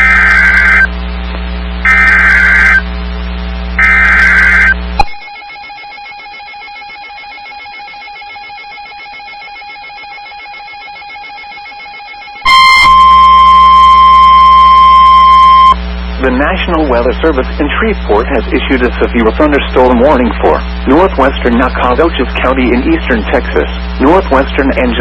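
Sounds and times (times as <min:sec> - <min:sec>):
loud digital data bursts: 0:00.0 - 0:00.9, 0:01.8 - 0:02.8, 0:03.8 - 0:04.8, 0:12.5 - 0:25.0
steady single-pitch warning alarm tone: 0:00.0 - 0:00.9, 0:01.8 - 0:02.9, 0:03.8 - 0:15.9.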